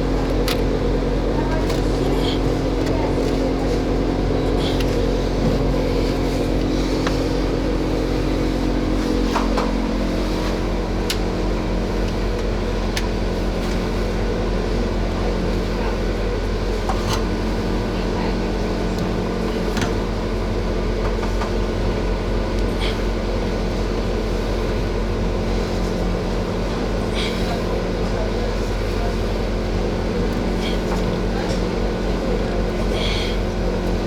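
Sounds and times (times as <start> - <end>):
machine humming: 0.0 - 14.7.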